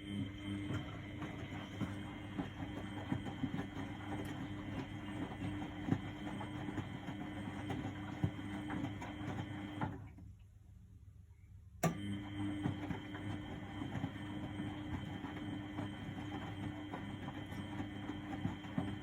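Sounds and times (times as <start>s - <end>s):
washing machine motor hum: 0.0s - 10.4s, 11.7s - 19.0s.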